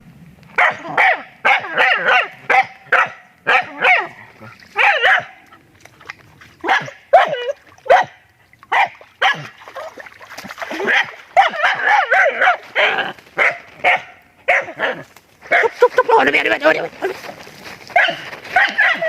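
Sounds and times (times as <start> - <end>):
dog barking sharply: 0.6 - 4.2, 4.8 - 5.4, 6.6 - 9.5, 10.8 - 14.8, 17.9 - 19.0.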